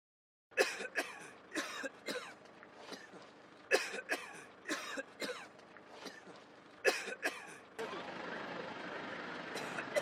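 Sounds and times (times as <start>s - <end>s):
person coughing: 0.6s - 3.1s, 3.7s - 5.5s, 6.9s - 7.6s.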